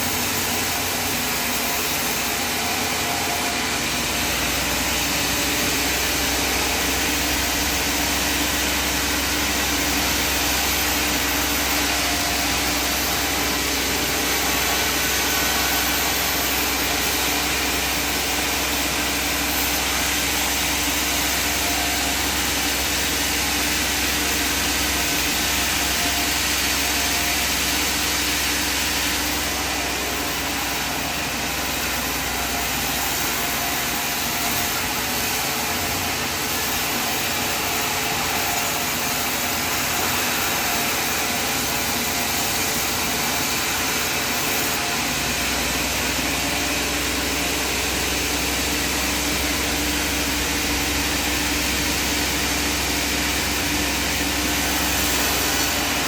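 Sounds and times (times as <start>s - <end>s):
sawmill engine drone: 0.0s - 56.0s.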